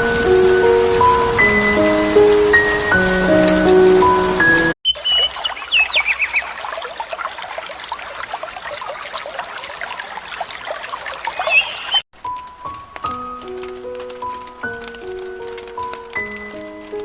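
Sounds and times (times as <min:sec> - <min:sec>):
birds chirping: 0:02.0 - 0:12.1
high bird trill: 0:04.9 - 0:06.6, 0:07.6 - 0:09.1, 0:11.3 - 0:12.0
dense patter of short sounds: 0:12.2 - 0:17.0.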